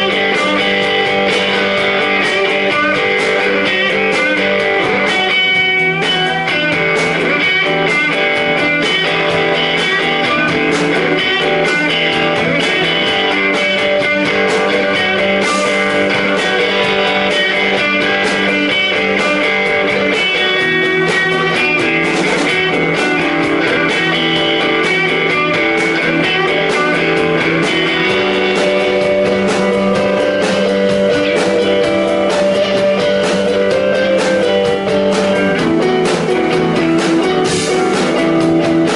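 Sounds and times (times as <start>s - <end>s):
electric guitar: 0.0s - 38.9s
rock band playing: 0.0s - 38.9s.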